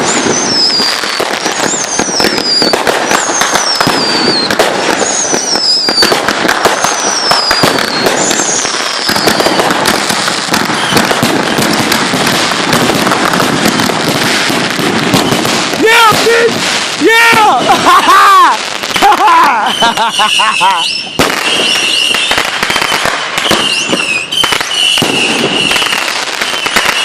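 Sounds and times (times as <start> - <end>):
falling firework whistles: 0.0 - 15.7, 17.8 - 27.0
fireworks crackling and banging: 0.0 - 27.0.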